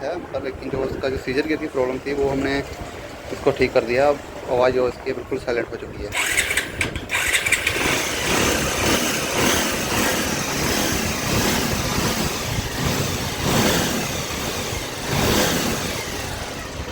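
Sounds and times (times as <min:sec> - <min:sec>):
motorcycle engine idling: 0:06.2 - 0:16.9.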